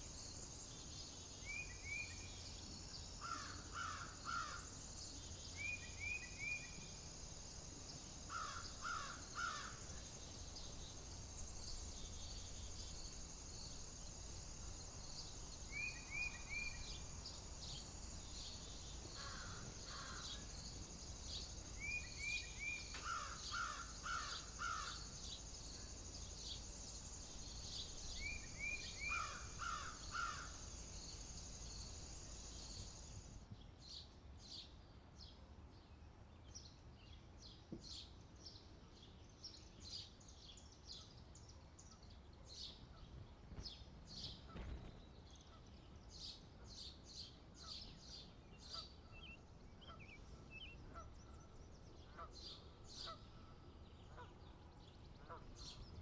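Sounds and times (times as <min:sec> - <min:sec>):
faint chirps: 0:00.0 - 0:33.4
birds calling: 0:08.3 - 0:33.3.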